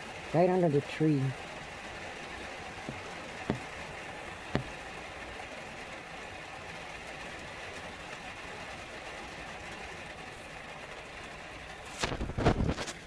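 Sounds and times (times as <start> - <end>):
rain shower hiss: 0.0 - 13.0
sharp taps: 2.9 - 3.7, 4.5 - 4.8.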